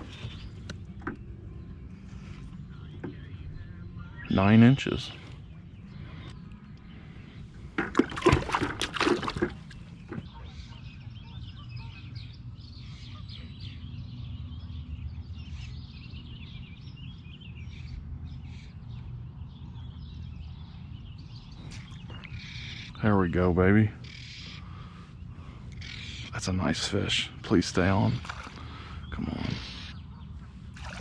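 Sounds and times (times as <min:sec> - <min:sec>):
birds chirping faintly: 0:00.0 - 0:31.0
steady low hum: 0:00.0 - 0:31.0
knocks and splashes: 0:07.7 - 0:10.3, 0:28.1 - 0:28.9, 0:30.8 - 0:31.0.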